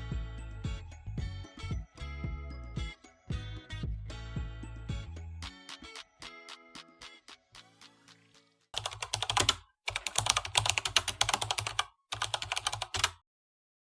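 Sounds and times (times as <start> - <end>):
rapid keyboard typing: 5.4 - 13.2.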